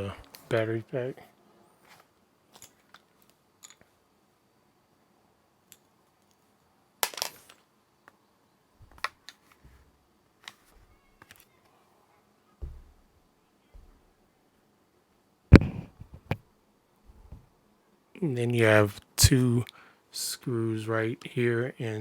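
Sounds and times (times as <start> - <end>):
dull low knock: 12.6 - 13.0.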